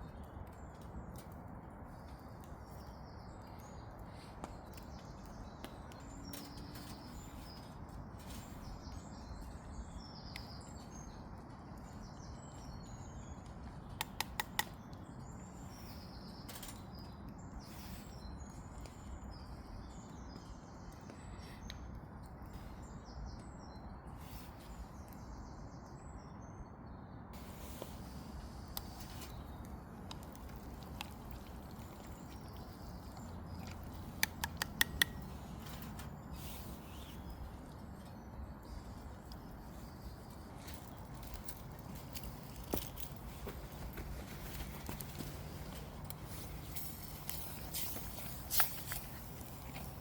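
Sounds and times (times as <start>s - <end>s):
small birds chirping: 0.0s - 50.0s
sharp clicks: 13.9s - 14.8s, 33.6s - 36.1s.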